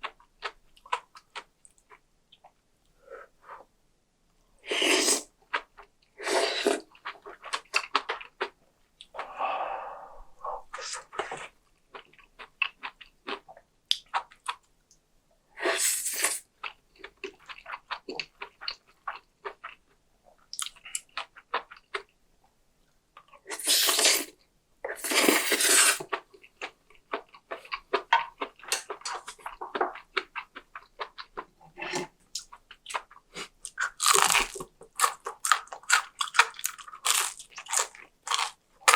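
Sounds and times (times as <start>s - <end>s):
wet chewing and mouth clicks: 16.6s - 22.1s, 26.0s - 38.9s.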